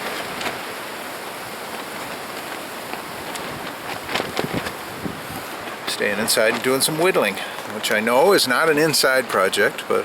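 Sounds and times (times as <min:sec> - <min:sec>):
strong wind blowing: 0:00.7 - 0:07.5.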